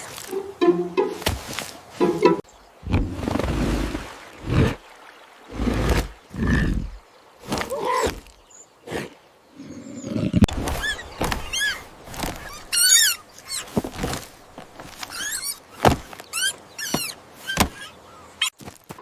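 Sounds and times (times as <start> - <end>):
high squeaky calls: 10.7 - 13.7, 15.0 - 18.6
sharp knocks and thuds: 15.8 - 16.2.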